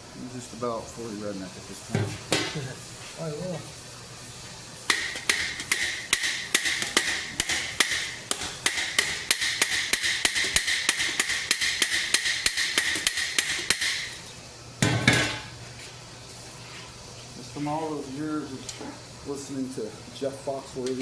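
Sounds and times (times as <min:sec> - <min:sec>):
hammer striking steel plates: 0:04.9 - 0:14.2.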